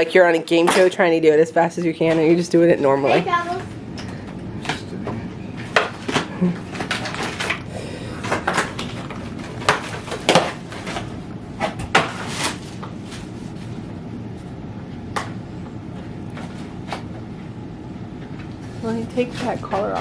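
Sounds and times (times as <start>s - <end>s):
packaging rustling: 5.6s - 13.8s.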